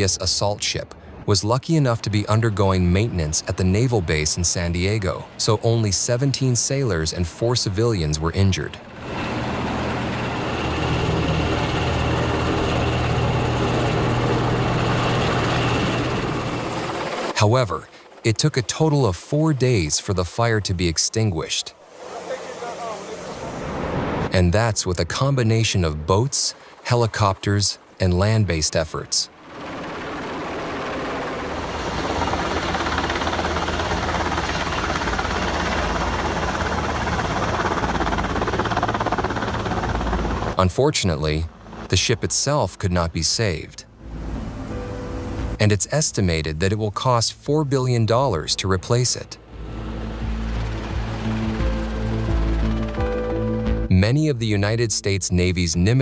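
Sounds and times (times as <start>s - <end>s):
helicopter rotor and engine: 0.0s - 53.7s
low mechanical drone: 6.8s - 17.4s, 29.4s - 54.2s.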